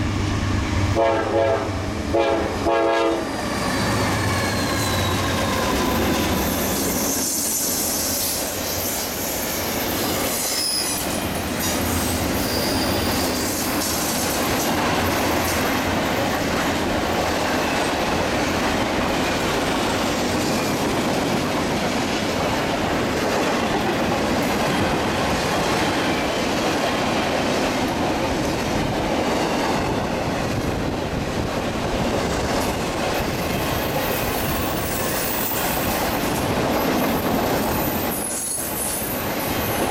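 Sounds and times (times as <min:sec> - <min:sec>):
low rumble of locomotives: 0:00.0 - 0:07.2
train wheels on rail clacking: 0:03.1 - 0:39.9
high wheel squeal: 0:03.2 - 0:14.0, 0:37.6 - 0:39.9.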